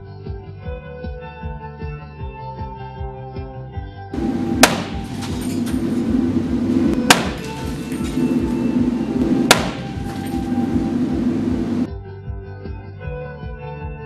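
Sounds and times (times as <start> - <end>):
gunshots: 4.2 - 10.7
steady background hiss: 4.2 - 11.9.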